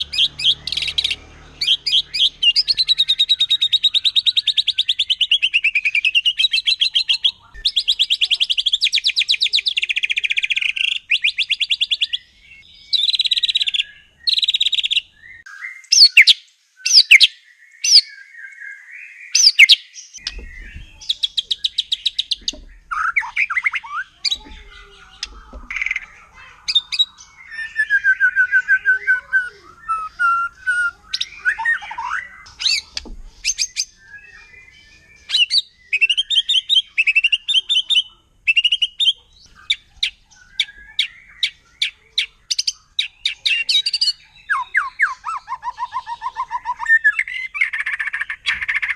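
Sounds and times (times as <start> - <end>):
songbird singing: 0.0 - 48.9.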